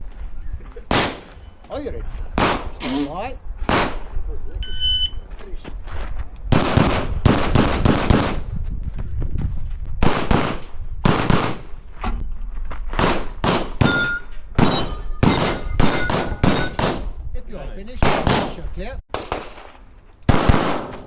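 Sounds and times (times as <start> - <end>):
pistol shots with echo: 0.9 - 1.4, 2.4 - 2.8, 3.7 - 4.1, 6.5 - 8.4, 10.0 - 11.6, 13.0 - 17.0, 18.0 - 19.7, 20.3 - 21.0.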